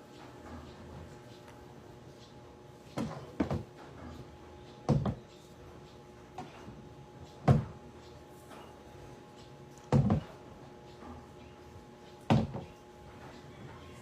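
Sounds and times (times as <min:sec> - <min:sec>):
dull thumps: 0:09.9 - 0:10.4.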